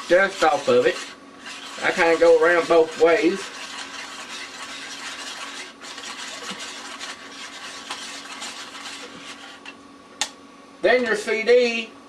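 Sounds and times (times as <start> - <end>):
pad scraping swish on disc: 0.0 - 9.8.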